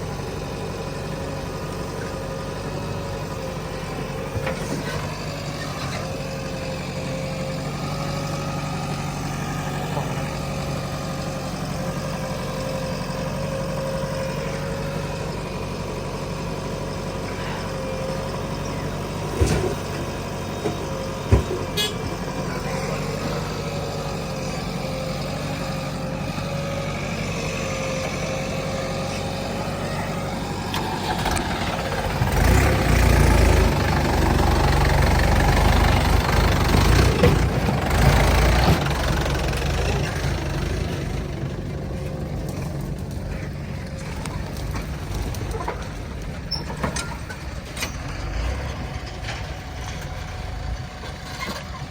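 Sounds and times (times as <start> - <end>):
diesel engines running: 0.0 - 51.9.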